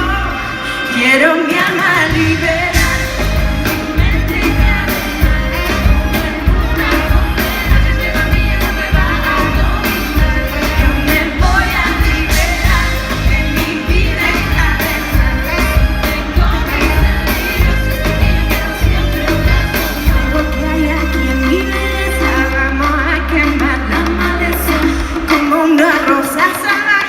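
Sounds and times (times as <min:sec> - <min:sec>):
live pop band: 0:00.0 - 0:27.0
woman singing lead vocal: 0:00.0 - 0:27.0
steady drum beat: 0:01.5 - 0:20.6.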